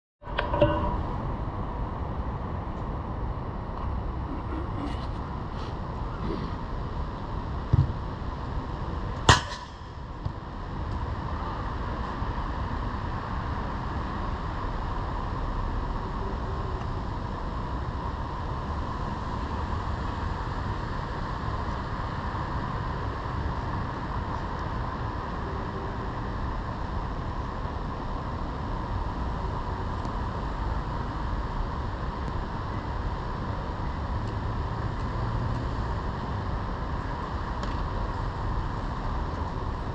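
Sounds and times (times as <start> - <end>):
steady rushing outdoor noise: 0.2 - 39.9
sharp crack: 9.3 - 10.0.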